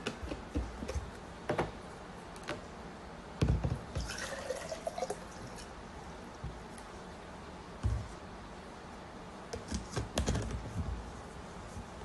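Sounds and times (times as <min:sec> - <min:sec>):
water pouring into kettle: 0:04.0 - 0:05.7.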